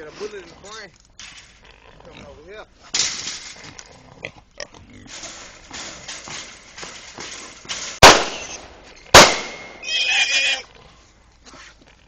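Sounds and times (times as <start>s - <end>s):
pistol shots: 8.0s - 9.8s
hog squealing: 9.8s - 10.7s.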